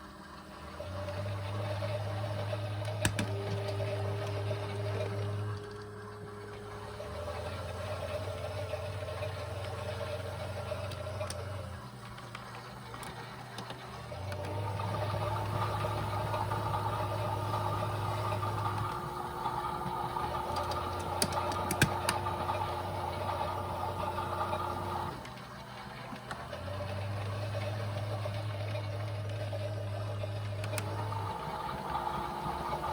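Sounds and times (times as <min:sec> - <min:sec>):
toy motors whirring: 0:00.0 - 0:32.9
sharp clicks: 0:20.5 - 0:22.3.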